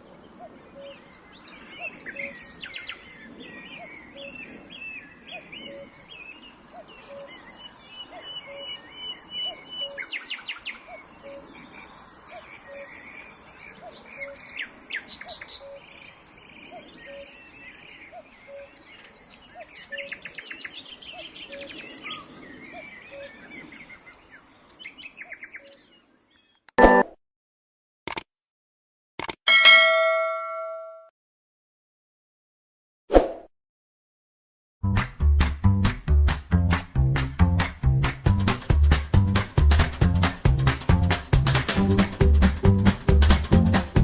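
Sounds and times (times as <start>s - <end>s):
birds chirping and trilling: 0.2s - 26.6s.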